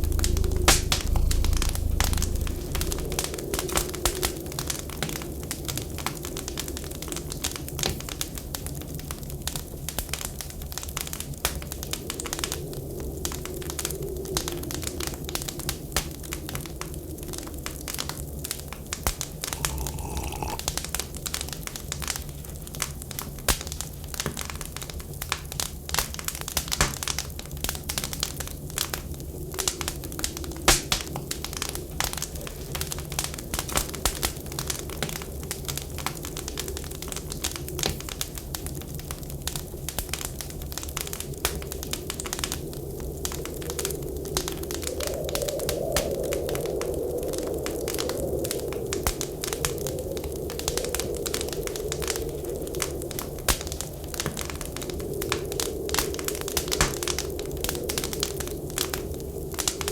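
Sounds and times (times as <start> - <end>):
wind whistling: 0.0 - 4.3, 19.6 - 20.6, 42.8 - 56.5
low rumble: 0.0 - 4.4, 19.5 - 20.6.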